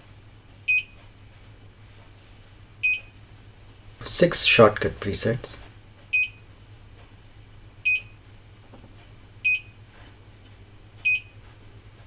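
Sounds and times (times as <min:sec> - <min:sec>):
faint steady hum: 0:04.0 - 0:06.4.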